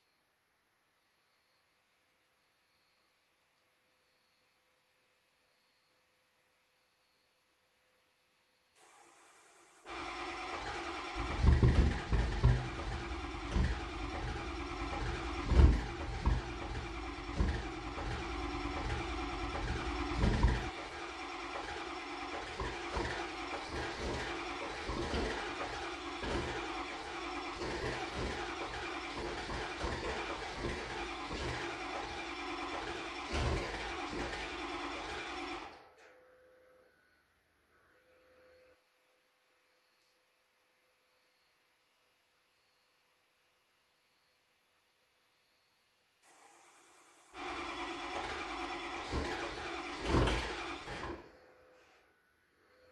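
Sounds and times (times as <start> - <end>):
diesel engine running unevenly: 8.8 - 35.8, 46.3 - 51.4
diesel engine cranking: 8.8 - 35.9, 46.3 - 51.5.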